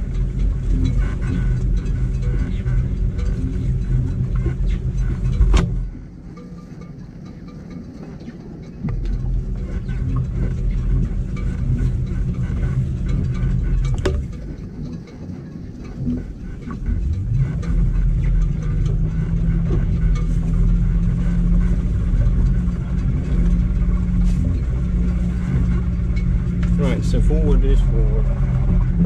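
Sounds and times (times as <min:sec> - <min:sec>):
electric boat motor humming: 0:00.0 - 0:29.0.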